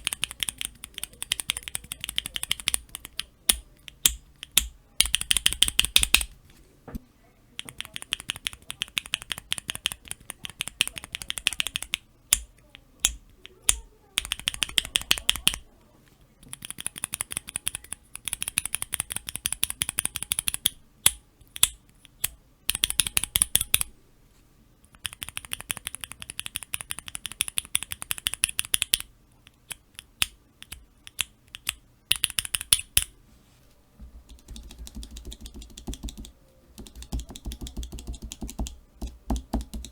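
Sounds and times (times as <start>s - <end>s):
keyboard switches clacking: 0.0s - 7.0s, 7.6s - 15.6s, 16.4s - 24.0s, 24.9s - 33.1s, 34.2s - 39.9s.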